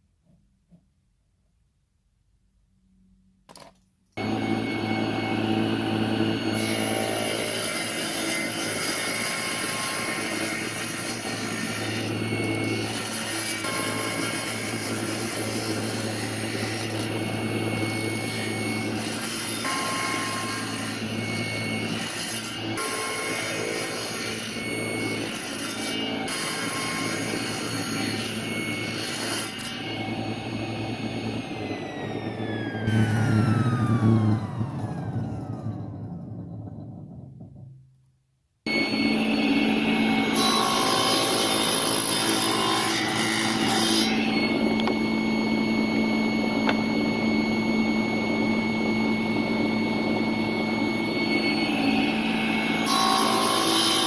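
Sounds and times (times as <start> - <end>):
hissing cutting noise: 4.2 - 35.6
woodworking machine humming: 4.2 - 38.0, 38.7 - 54.0.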